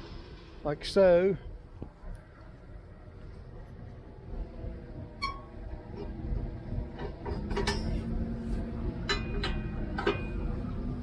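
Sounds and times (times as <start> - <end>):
steady low hum: 0.0 - 11.0
metal hitch clanking: 5.2 - 6.0, 7.0 - 8.0, 9.0 - 10.4.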